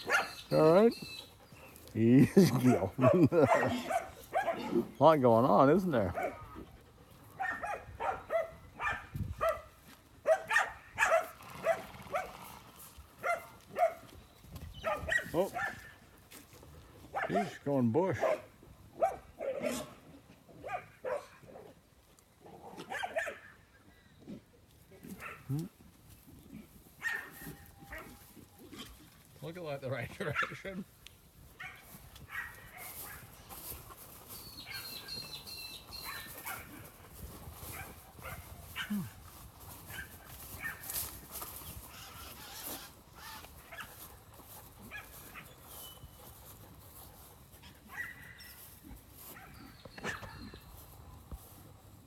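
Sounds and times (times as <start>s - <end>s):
dog barking: 0.0s - 0.4s, 2.6s - 4.8s, 6.1s - 6.6s, 7.3s - 12.3s, 13.2s - 14.1s, 14.8s - 16.0s, 17.1s - 17.6s, 18.2s - 20.0s, 20.6s - 21.8s, 22.8s - 23.6s, 25.1s - 25.6s, 27.0s - 28.2s, 30.2s - 30.6s, 31.6s - 33.3s, 36.0s - 36.9s, 37.7s - 39.1s, 39.9s - 41.0s, 43.7s - 44.1s, 44.8s - 45.6s, 47.8s - 48.6s, 49.3s - 50.6s
bird calling: 0.0s - 1.8s.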